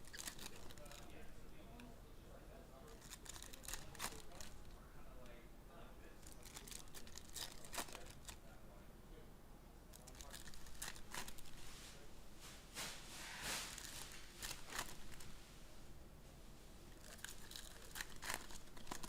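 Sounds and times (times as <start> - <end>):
card pack wrappers tearing and crinkling: 0.0 - 1.1, 2.9 - 4.6, 6.2 - 8.4, 10.0 - 11.5, 13.5 - 15.3, 17.0 - 19.0.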